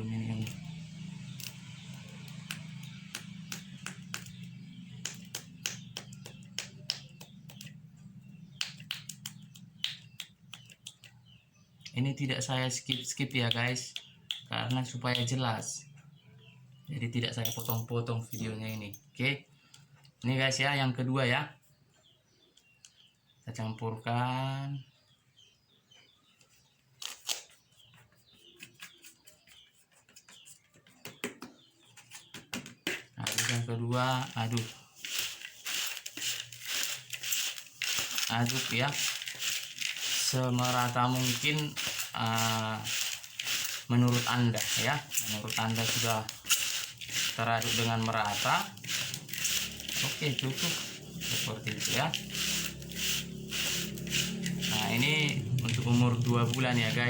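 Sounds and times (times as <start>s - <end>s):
chicks peeping: 3.1s - 10.7s
foil packaging crackling: 34.2s - 57.0s.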